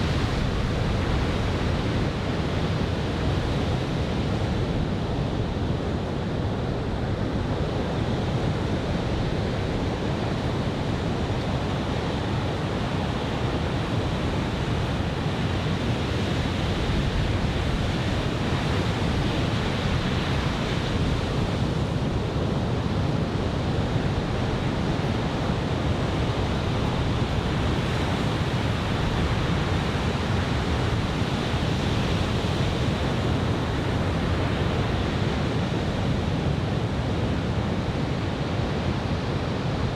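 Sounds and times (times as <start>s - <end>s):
wind rumbling on microphone: 0.0s - 39.9s.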